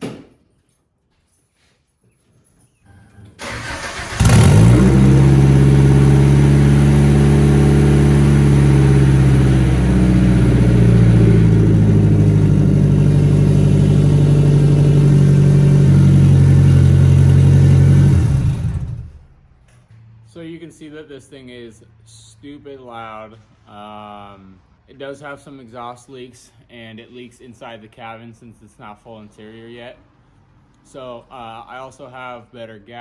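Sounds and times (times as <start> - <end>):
loud car engine starting and idling: 3.4 - 19.4.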